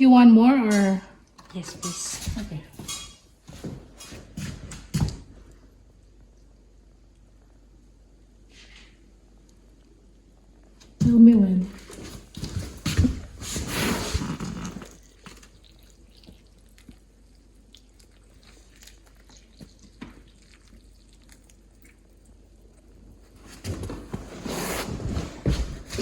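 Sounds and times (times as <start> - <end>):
faint drips and ticks: 14.8 - 23.3.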